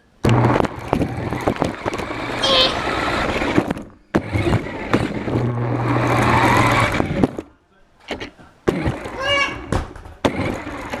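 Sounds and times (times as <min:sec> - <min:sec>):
toy car motor and wheels rattling: 0:00.6 - 0:07.5, 0:10.3 - 0:11.0.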